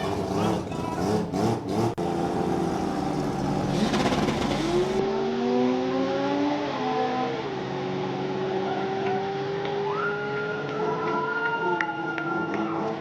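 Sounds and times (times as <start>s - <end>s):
race car engine running hard: 0.0s - 9.8s.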